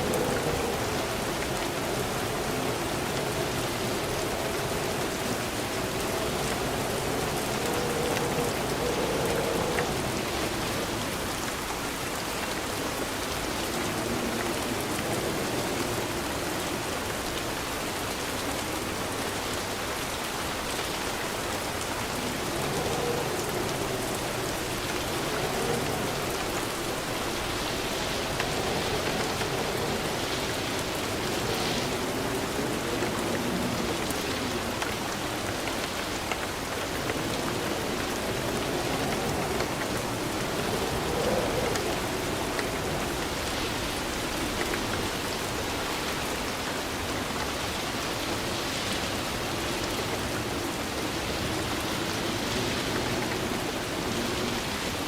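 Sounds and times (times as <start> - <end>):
rain pattering: 0.0 - 55.0.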